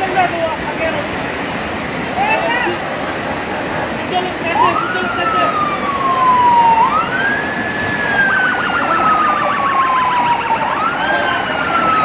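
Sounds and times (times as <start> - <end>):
steady rushing noise: 0.0 - 12.0
siren wailing: 4.2 - 12.0.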